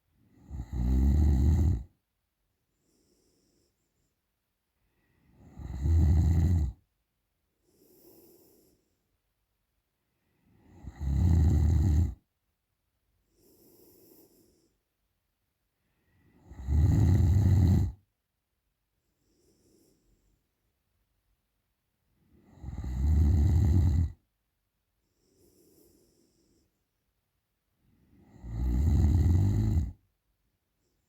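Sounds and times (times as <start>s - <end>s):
quiet breath: 0.0s - 16.6s, 17.3s - 31.0s
woman snoring: 0.4s - 1.9s, 5.3s - 6.8s, 10.6s - 12.2s, 16.4s - 18.0s, 22.4s - 24.2s, 28.1s - 30.0s.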